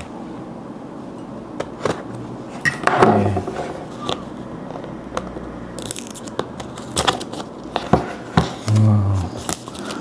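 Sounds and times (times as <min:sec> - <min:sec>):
packaging clicking and crackling: 0:05.8 - 0:07.9, 0:08.6 - 0:10.0.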